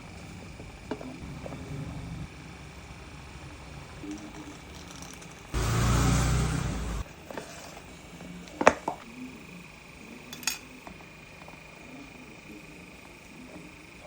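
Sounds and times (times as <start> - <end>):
loud mechanical whirring: 0.0 - 8.6
hard objects clinking and knocking: 4.0 - 5.6.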